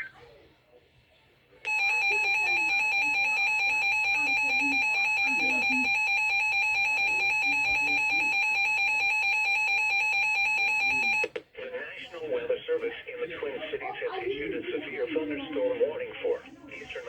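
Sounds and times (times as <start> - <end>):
two-tone alarm tone: 1.7 - 11.3.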